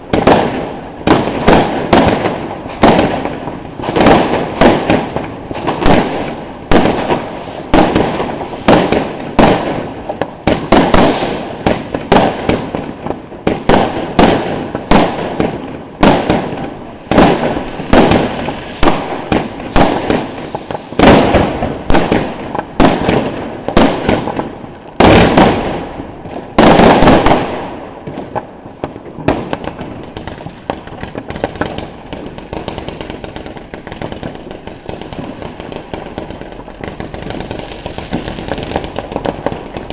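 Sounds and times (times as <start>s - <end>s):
firework crackling: 0.0s - 39.9s
firework battery bangs: 0.1s - 12.8s, 13.5s - 24.4s, 32.5s - 39.9s.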